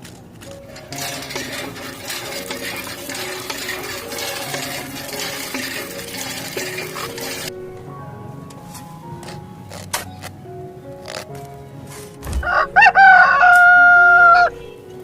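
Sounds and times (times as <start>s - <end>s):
background music: 0.4s - 15.0s.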